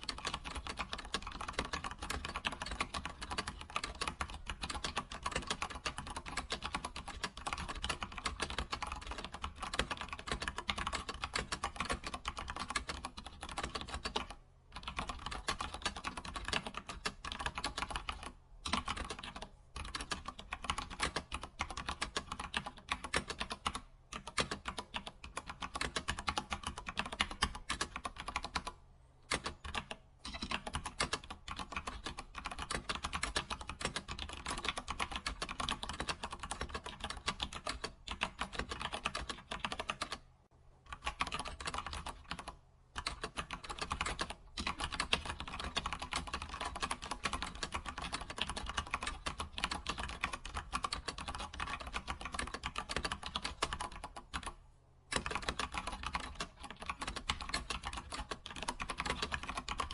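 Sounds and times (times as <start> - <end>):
typing on computer keyboard: 0.0 - 40.2, 40.9 - 59.9.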